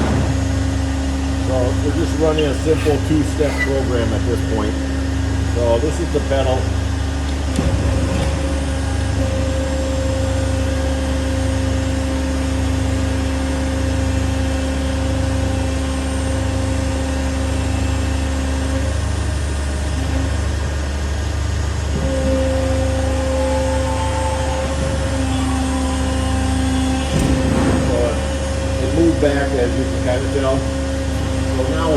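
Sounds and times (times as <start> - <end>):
electric motor hum and whine: 0.0 - 31.9.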